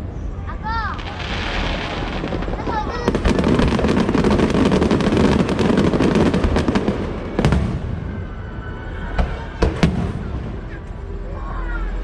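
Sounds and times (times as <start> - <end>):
fireworks crackling: 0.0 - 8.4
firework bang: 1.0 - 8.3, 9.2 - 10.5.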